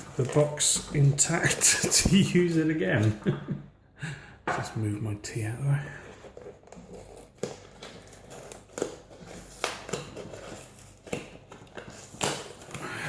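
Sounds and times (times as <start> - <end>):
packaging rustling: 0.0 - 2.6, 5.9 - 13.0.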